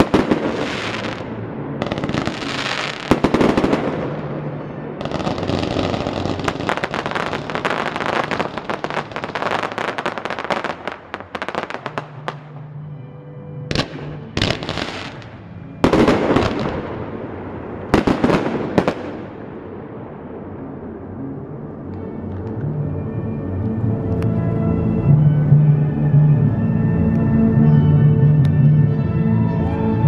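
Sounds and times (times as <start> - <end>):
fireworks crackling and popping: 0.0 - 4.4, 5.0 - 12.5, 13.8 - 17.0, 17.8 - 19.4
loud firework bursts: 0.0 - 12.4, 13.7 - 19.4
music: 0.0 - 30.0.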